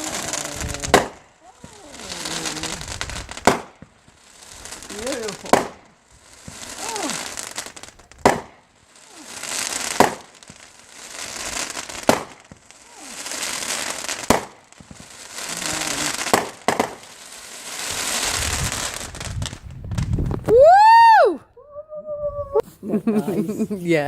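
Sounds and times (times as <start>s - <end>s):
fireworks banging: 0.0s - 21.0s
fireworks crackling hiss: 0.0s - 21.2s, 22.6s - 24.0s.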